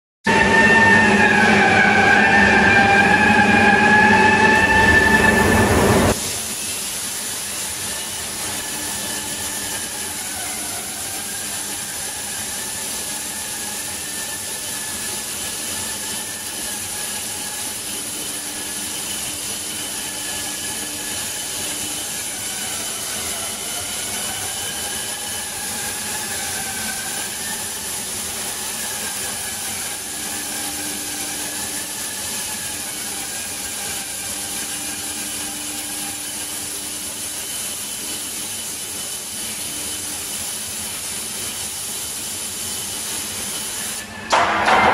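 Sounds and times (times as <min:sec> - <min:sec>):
loud sound cutting off: 0:00.3 - 0:06.6
cutting torch hissing: 0:04.5 - 0:44.2.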